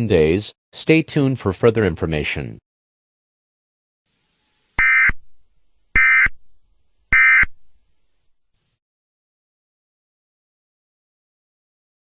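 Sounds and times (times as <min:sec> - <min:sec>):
digital data tone bursts: 0:04.7 - 0:05.4, 0:06.0 - 0:06.4, 0:07.1 - 0:07.6.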